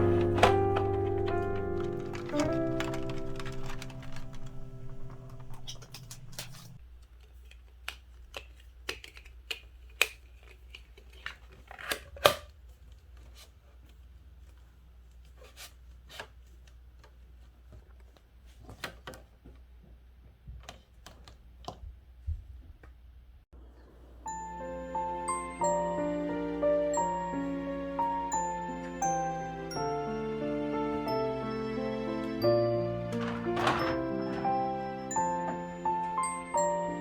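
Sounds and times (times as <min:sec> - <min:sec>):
background music: 0:00.0 - 0:06.6, 0:24.2 - 0:37.0.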